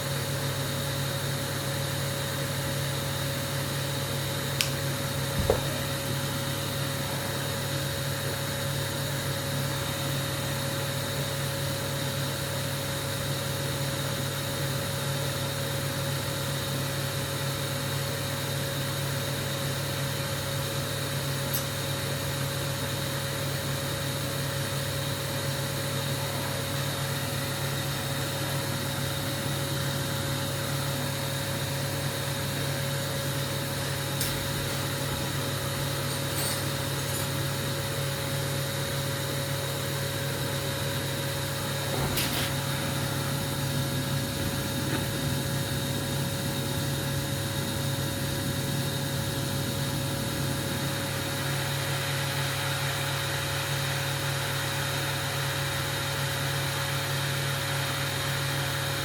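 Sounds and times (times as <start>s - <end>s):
machine hum: 33.2s - 38.5s, 41.3s - 48.4s.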